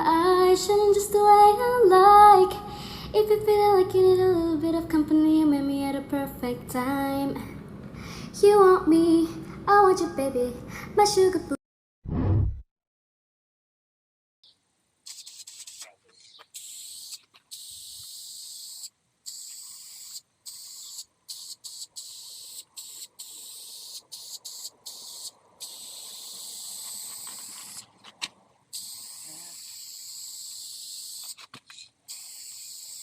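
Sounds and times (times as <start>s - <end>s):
high hissing: 15.1s - 27.9s, 28.7s - 33.0s.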